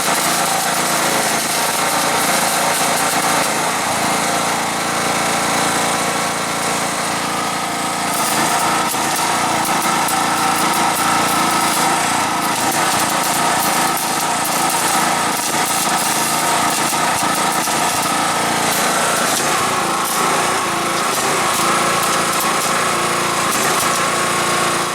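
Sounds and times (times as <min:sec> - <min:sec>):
arc welding buzz and crackle: 0:00.0 - 0:24.9.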